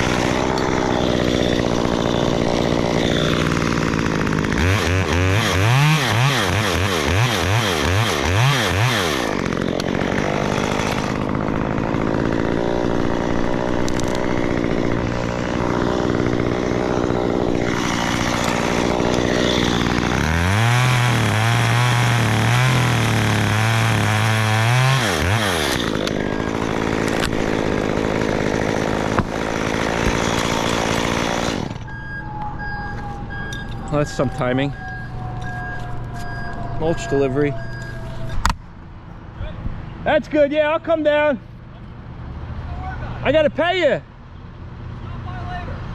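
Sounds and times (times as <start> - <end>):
chainsaw cutting wood: 0.0 - 31.9
chainsaw revving: 0.0 - 31.9.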